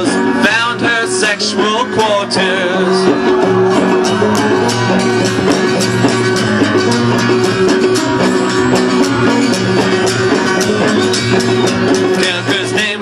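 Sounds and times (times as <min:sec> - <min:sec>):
drums striking steady beat: 0:00.0 - 0:13.0
guitar: 0:00.0 - 0:13.0.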